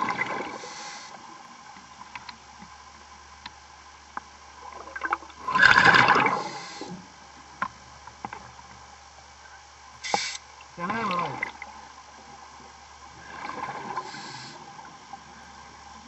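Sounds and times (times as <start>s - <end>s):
water gurgling and bubbling: 0.0s - 0.9s, 4.6s - 7.0s, 10.6s - 12.2s, 13.0s - 16.0s.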